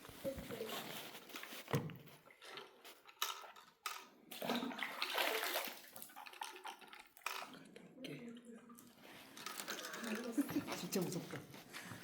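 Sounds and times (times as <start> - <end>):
water sloshing and splashing: 0.6 - 7.6.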